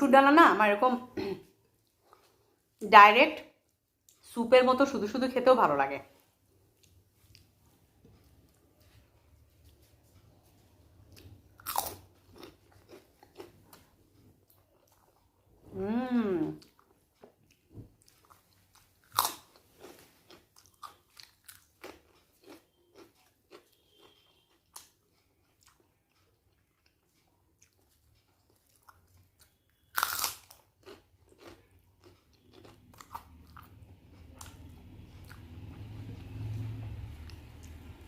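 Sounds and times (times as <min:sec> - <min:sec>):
crunchy snack being chewed: 0:11.1 - 0:13.9, 0:17.5 - 0:35.5.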